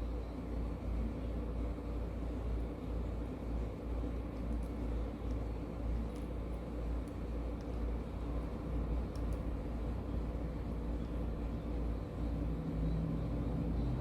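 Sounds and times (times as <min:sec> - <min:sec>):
low mechanical hum: 0:00.0 - 0:14.0
faint small clicks: 0:09.1 - 0:09.5.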